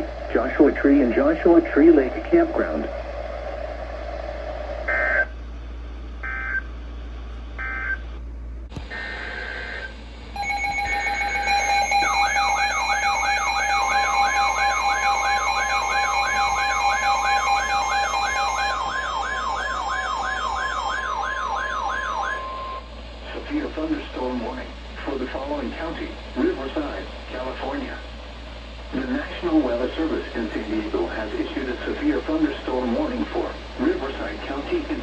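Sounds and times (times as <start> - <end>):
electronic data tone bursts: 10.4 - 22.8
warbling alert signal: 10.4 - 22.8.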